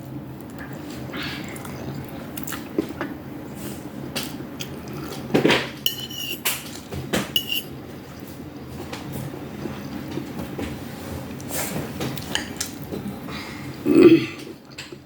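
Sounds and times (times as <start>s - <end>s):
utensils clinking on dishware: 5.9s - 6.7s, 7.3s - 7.7s.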